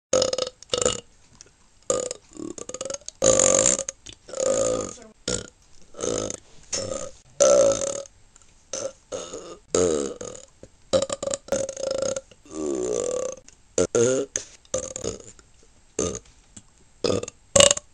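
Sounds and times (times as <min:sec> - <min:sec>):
person burping: 0:01.9 - 0:08.1, 0:08.8 - 0:15.4, 0:16.0 - 0:16.2, 0:17.0 - 0:17.9.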